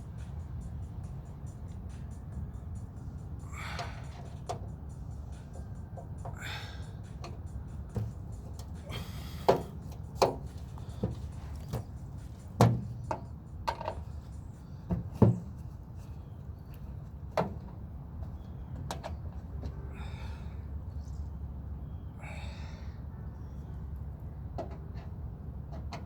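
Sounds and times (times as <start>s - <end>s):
steady low hum: 0.0s - 18.7s
hand tools knocking on metal: 7.2s - 14.1s.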